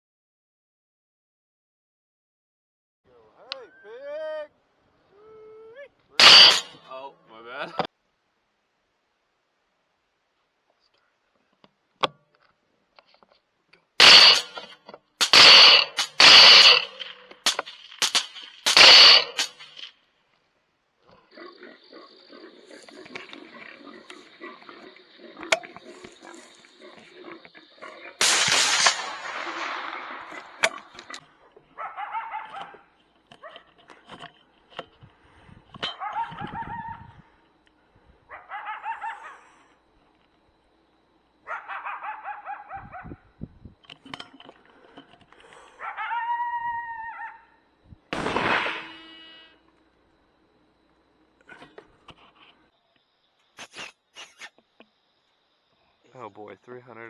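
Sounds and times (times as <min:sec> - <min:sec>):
loud sudden noises: 0:06.2 - 0:06.9, 0:14.0 - 0:19.9, 0:28.2 - 0:31.2, 0:48.1 - 0:49.2.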